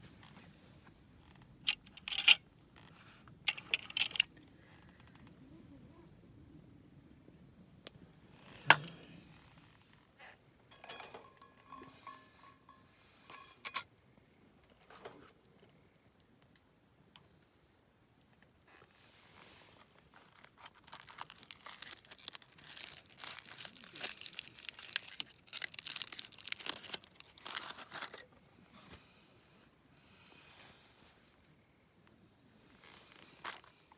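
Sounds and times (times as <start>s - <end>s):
sharp ringing clink: 10.7s - 13.9s
packaging crinkling and rustling: 19.8s - 28.3s.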